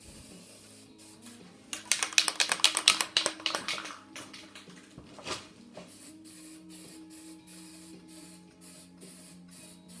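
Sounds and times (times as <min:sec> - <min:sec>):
rapid sharp clicks and taps: 0:01.7 - 0:04.8.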